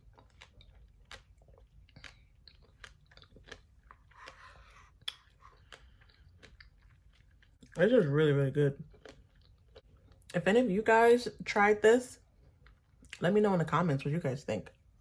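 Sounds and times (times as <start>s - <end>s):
chewing and crunching: 0.0s - 8.1s, 8.7s - 10.3s, 12.3s - 13.2s.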